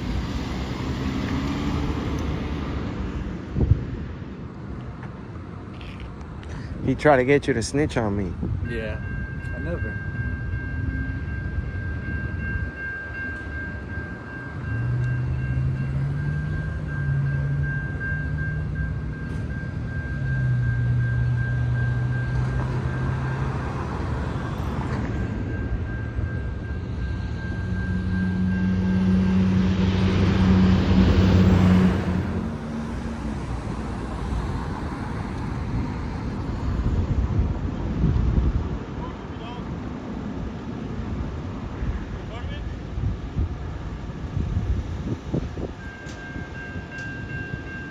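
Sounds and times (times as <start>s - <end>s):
vehicle passing close by: 0.0s - 3.4s, 27.9s - 37.8s
street traffic: 0.0s - 47.9s
high whine: 14.6s - 37.5s
low drone rising in pitch: 14.6s - 38.6s
large vehicle rumbling past: 14.6s - 39.2s.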